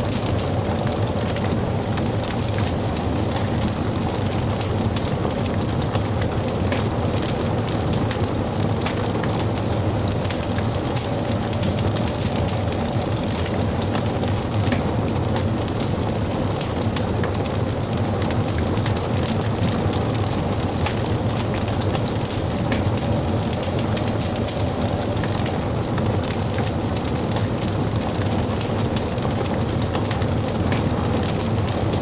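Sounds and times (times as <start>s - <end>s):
wood fire crackling: 0.0s - 32.0s.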